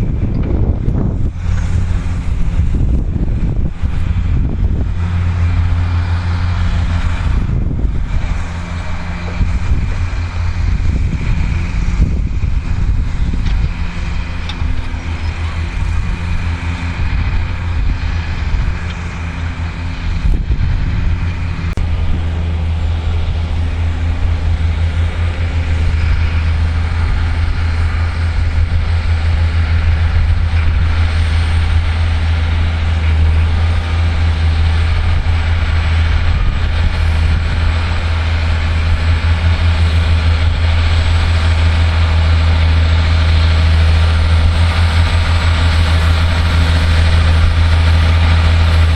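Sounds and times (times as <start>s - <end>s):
tractor diesel engine running: 0.0s - 48.9s.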